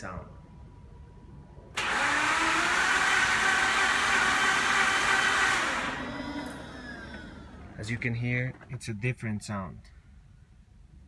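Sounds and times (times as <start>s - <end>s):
starter cranking engine: 1.8s - 8.1s.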